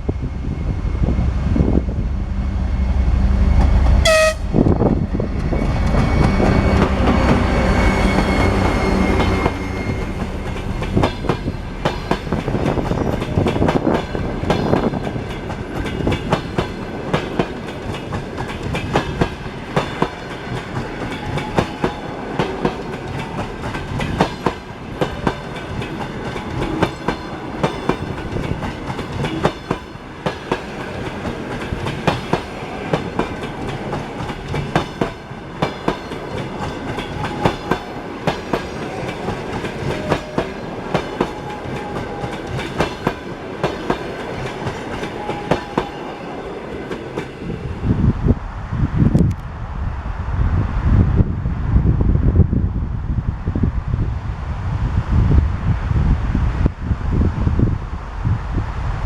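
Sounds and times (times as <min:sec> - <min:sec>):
locomotive engine rumbling: 0:00.0 - 0:15.2
train wheels clicking on rails: 0:03.5 - 0:47.8
train horn toot: 0:03.6 - 0:04.9, 0:05.9 - 0:10.8, 0:39.7 - 0:42.7, 0:45.0 - 0:46.3.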